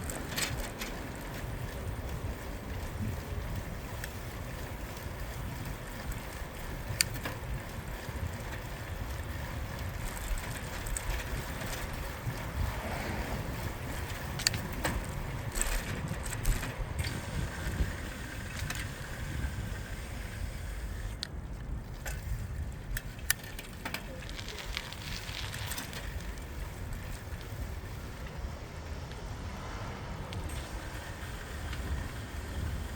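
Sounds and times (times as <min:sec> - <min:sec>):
bicycle tyre and road noise: 0:00.0 - 0:32.9
wind rumbling on microphone: 0:00.0 - 0:32.9.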